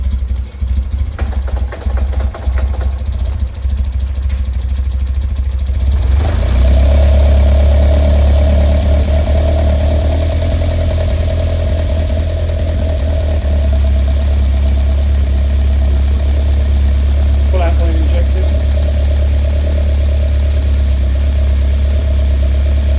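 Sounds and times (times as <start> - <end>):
car engine misfiring: 0.0 - 22.9
steady higher engine note: 1.1 - 22.9.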